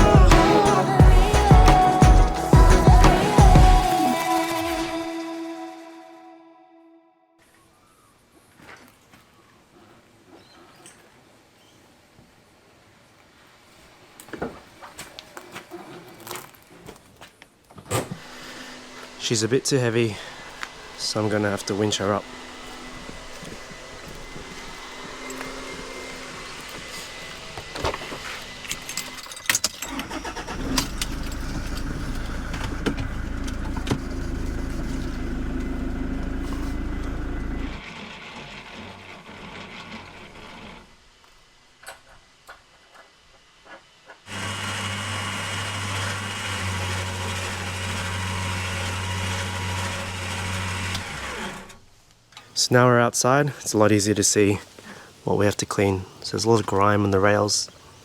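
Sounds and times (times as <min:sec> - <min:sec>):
electric winch motor running: 0:18.0 - 0:41.2, 0:44.3 - 0:52.0.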